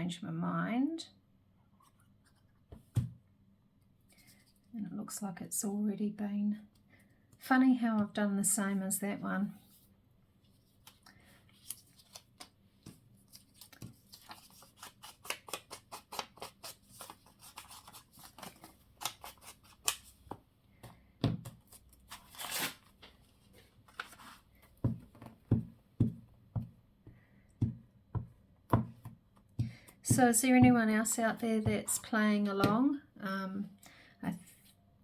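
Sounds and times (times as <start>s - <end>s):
paper rustling: 10.5s - 20.3s, 21.6s - 25.3s.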